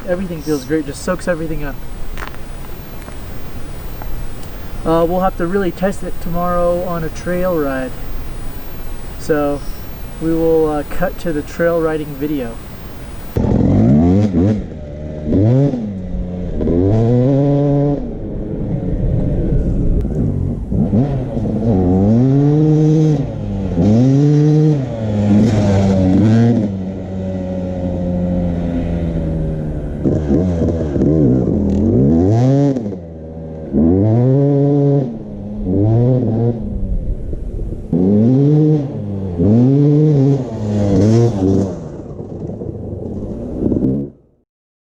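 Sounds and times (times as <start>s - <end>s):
dirt bike engine revving: 0.0s - 14.6s.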